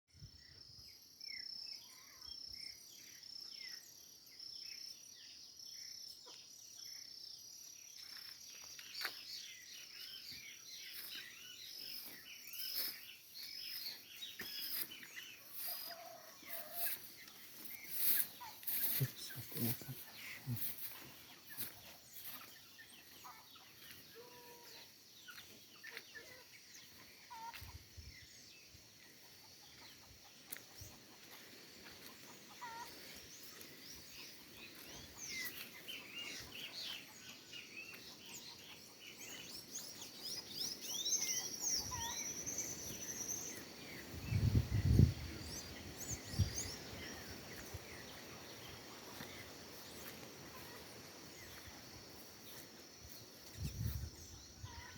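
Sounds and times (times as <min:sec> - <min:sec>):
birds chirping and calling: 0:08.0 - 0:54.9.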